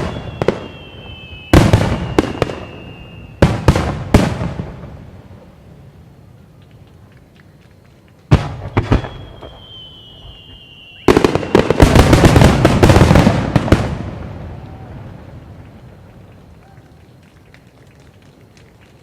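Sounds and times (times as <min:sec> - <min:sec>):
whistling firework shell: 0:00.0 - 0:03.7, 0:08.4 - 0:12.5
firework bangs: 0:00.0 - 0:05.2, 0:08.3 - 0:16.1
crackling firework burst: 0:00.0 - 0:06.1, 0:08.0 - 0:16.6.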